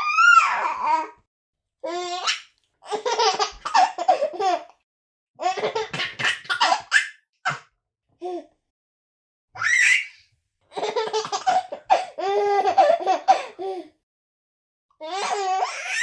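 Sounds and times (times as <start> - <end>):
baby giggling: 2.1 - 4.7, 10.8 - 13.5.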